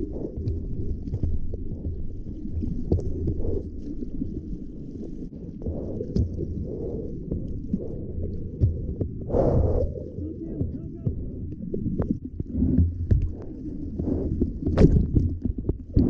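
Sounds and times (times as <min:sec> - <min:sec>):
muffled ocean water rushing: 0:00.0 - 0:16.0.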